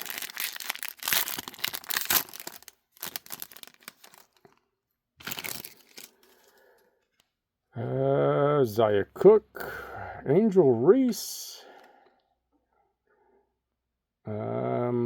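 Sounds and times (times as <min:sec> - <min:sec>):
foil wrapper tearing and crinkling: 0:00.0 - 0:04.6, 0:05.2 - 0:06.6.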